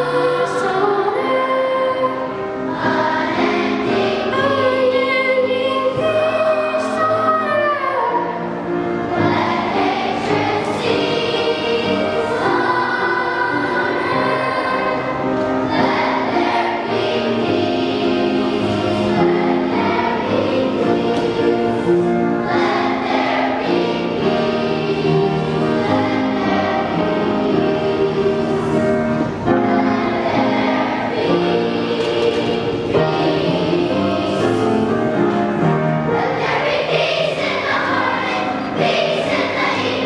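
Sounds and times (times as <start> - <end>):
children's choir singing: 0.0 - 40.0
instrumental accompaniment: 0.0 - 40.0.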